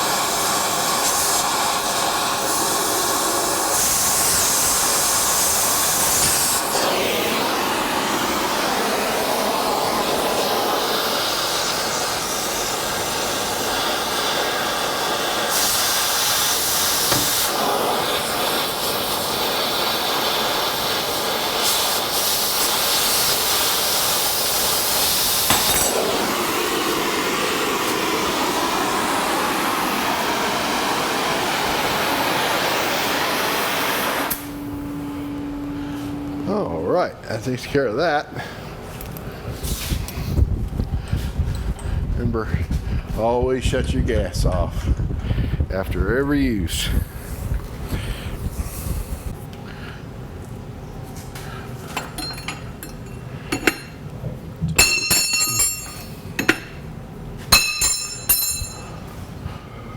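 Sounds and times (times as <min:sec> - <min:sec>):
cutting torch hissing: 0:00.0 - 0:38.8, 0:39.4 - 0:43.8, 0:45.4 - 0:50.2.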